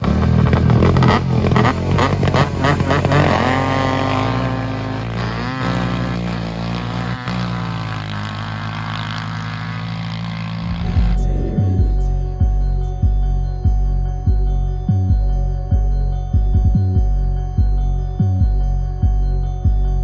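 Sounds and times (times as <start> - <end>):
atv engine revving: 0.0 - 13.7.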